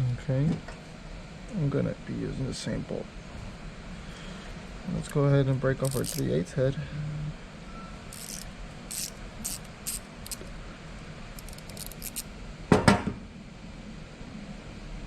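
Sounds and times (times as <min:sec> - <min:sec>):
light metallic clicks and scrapes: 0:05.8 - 0:06.4, 0:08.1 - 0:10.5, 0:11.4 - 0:12.2.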